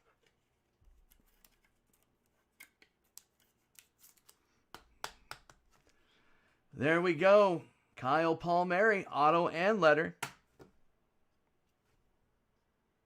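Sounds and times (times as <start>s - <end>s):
trading cards being handled: 0.2s - 6.0s.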